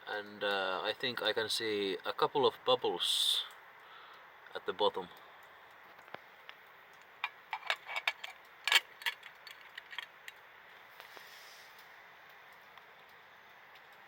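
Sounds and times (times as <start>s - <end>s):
metal cup ticking while heating: 6.9s - 10.5s.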